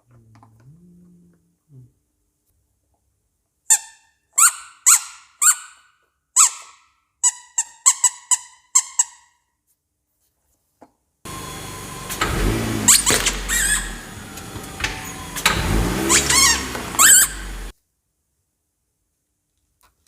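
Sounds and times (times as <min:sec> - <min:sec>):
short high squeaks: 0:11.3 - 0:17.7.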